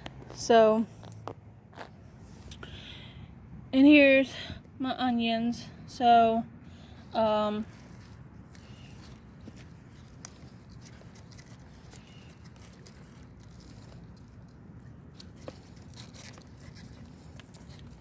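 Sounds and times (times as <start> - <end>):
light crackles and rustles: 7.1 - 18.0.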